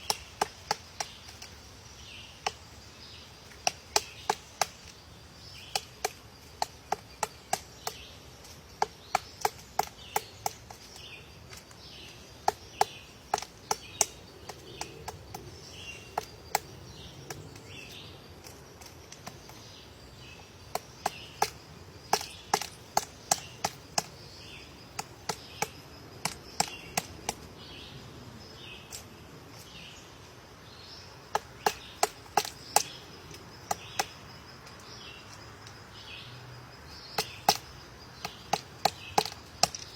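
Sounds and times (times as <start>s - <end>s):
woodpecker knocking on wood: 0.0s - 1.7s, 2.4s - 2.7s, 3.4s - 17.7s, 19.1s - 27.5s, 31.2s - 34.9s, 37.0s - 39.9s.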